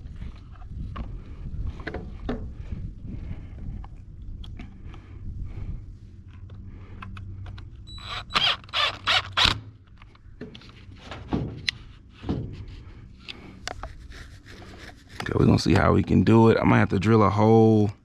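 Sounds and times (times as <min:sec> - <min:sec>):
rattling scrapes: 0:10.6 - 0:15.6.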